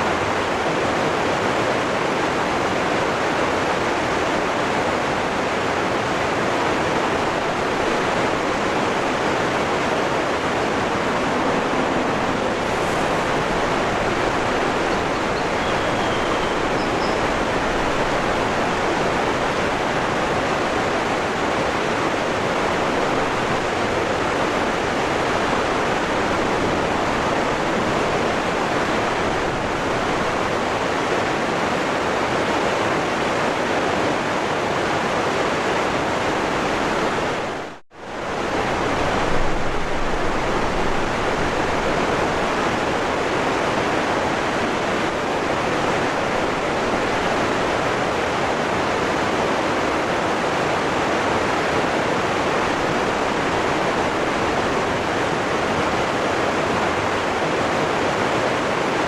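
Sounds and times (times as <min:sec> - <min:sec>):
waterfall rushing: 0:00.0 - 0:59.0
faint high chirps: 0:14.8 - 0:17.5.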